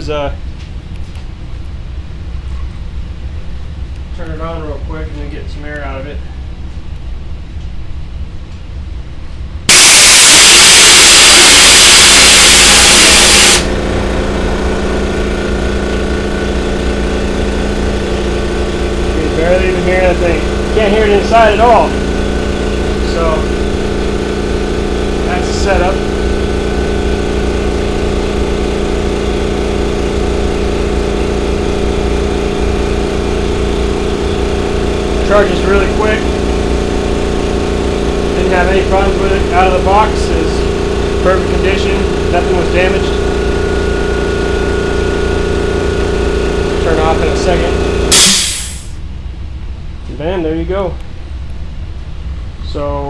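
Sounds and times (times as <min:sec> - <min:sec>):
compressor pump humming: 0:09.7 - 0:49.1
compressed air hissing: 0:11.2 - 0:13.7, 0:48.1 - 0:49.0.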